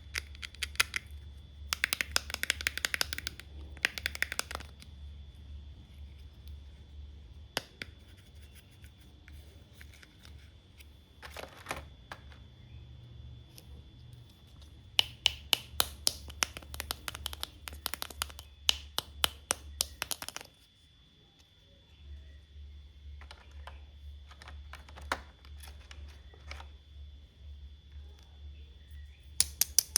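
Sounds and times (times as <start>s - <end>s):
plastic toy clicks: 1.7s - 4.9s, 15.0s - 20.5s, 29.4s - 29.9s
sharp clicks and taps: 1.7s - 4.9s, 15.0s - 20.5s, 29.4s - 29.9s.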